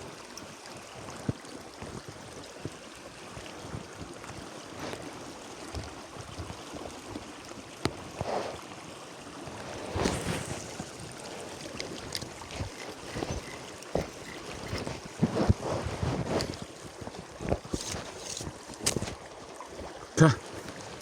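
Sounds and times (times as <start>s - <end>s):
small stream flowing: 0.0s - 21.0s
rustling: 9.7s - 19.2s.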